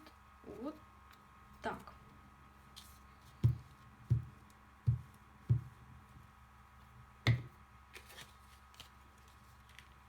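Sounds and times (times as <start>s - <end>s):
faint electrical hum: 0.0s - 10.0s
dull knocks on tabletop: 7.3s - 7.5s
paper handling: 8.0s - 10.0s.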